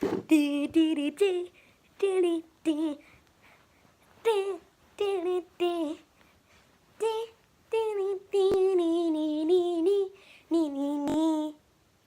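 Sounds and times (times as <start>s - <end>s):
child singing wordless tune: 0.3s - 3.1s, 4.1s - 6.1s, 6.9s - 11.7s.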